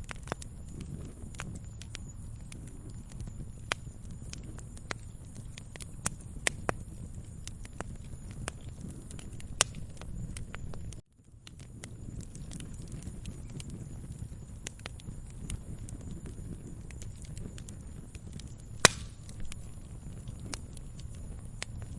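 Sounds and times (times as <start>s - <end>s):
fire popping and snapping: 0.0s - 21.9s
fire rumbling: 0.0s - 21.9s.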